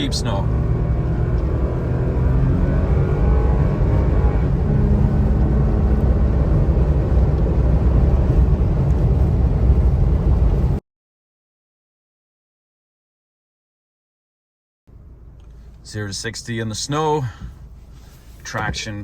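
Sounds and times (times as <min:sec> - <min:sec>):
engine and tire noise in cab: 0:00.0 - 0:10.8, 0:14.9 - 0:19.0.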